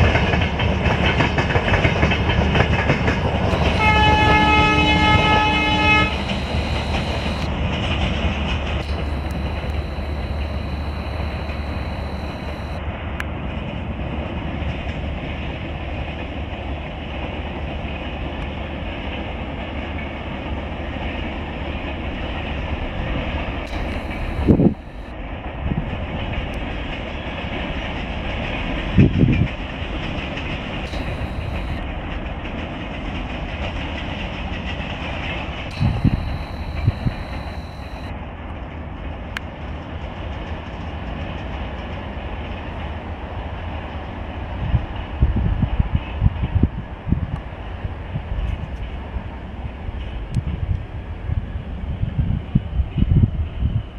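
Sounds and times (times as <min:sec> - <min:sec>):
moving train rumbling and clattering: 0:00.0 - 0:03.5.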